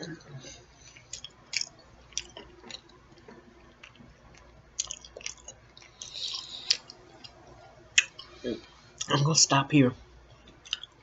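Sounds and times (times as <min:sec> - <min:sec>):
person chewing food: 0:00.5 - 0:08.4, 0:10.4 - 0:11.0.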